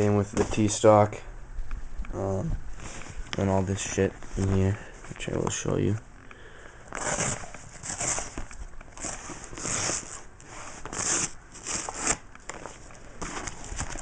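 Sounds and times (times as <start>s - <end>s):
packaging crinkling and rustling: 6.9s - 14.0s.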